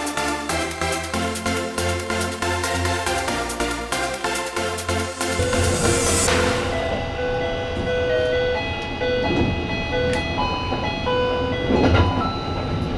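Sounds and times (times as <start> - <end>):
low train rumble: 5.1 - 12.9.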